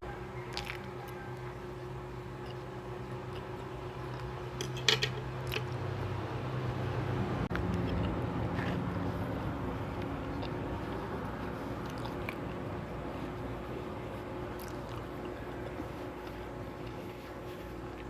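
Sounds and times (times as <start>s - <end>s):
steady low hum: 0.0s - 18.0s
utensils clinking on a plate: 4.6s - 5.7s.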